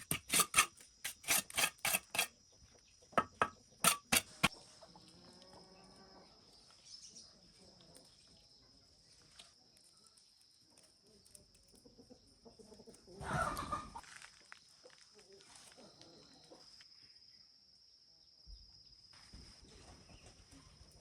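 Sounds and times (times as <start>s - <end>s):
sharp knocks: 3.2s - 4.5s.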